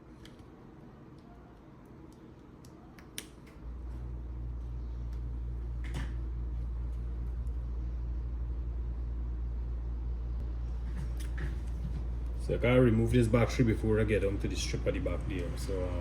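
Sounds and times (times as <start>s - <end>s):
steady low rumble: 3.6s - 16.0s.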